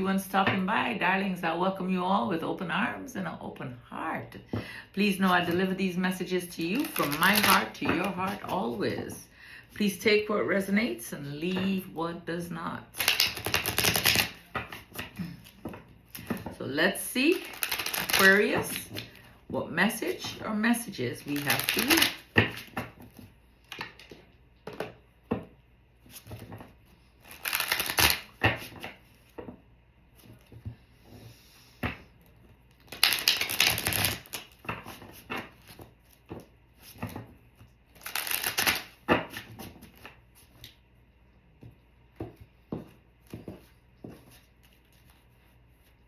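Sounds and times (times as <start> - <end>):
cards riffling: 27.2 - 28.7, 38.0 - 38.9.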